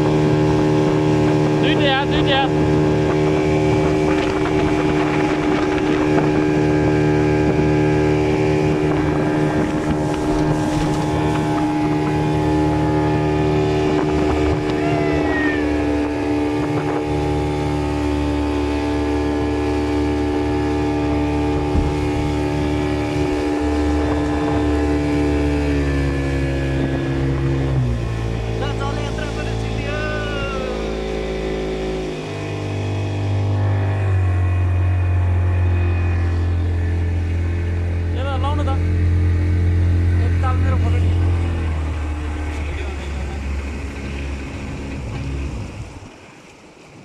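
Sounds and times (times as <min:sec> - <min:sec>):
wind buffeting microphone: 0:00.0 - 0:29.8, 0:38.8 - 0:46.2
boat motor running: 0:00.0 - 0:46.9.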